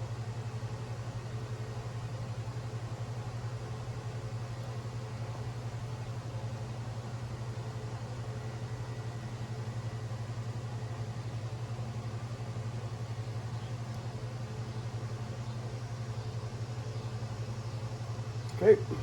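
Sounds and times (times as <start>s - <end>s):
low mechanical hum with flutter: 0.0s - 19.0s.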